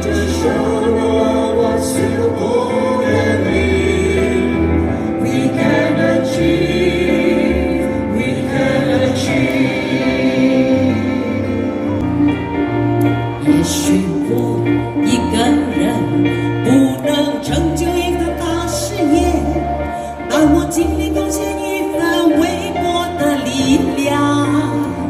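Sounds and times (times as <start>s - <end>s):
choir singing: 0.0s - 15.0s
instrumental accompaniment: 0.0s - 25.0s.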